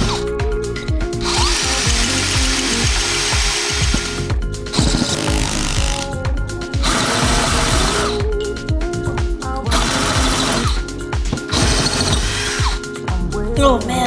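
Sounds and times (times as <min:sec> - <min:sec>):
background music with steady beat: 0:00.0 - 0:14.0
power drill boring into pot: 0:01.2 - 0:06.1, 0:06.8 - 0:08.2, 0:09.7 - 0:10.8, 0:11.5 - 0:12.9.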